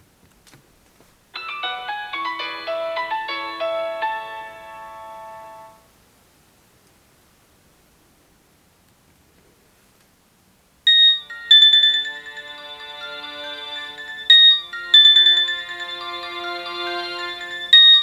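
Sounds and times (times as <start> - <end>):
polyphonic phone ringtone: 1.4 - 5.8, 10.9 - 18.0.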